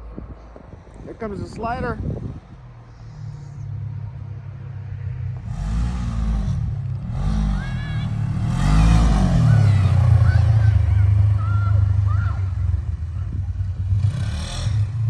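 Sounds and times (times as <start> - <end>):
car engine revving: 4.5 - 15.0.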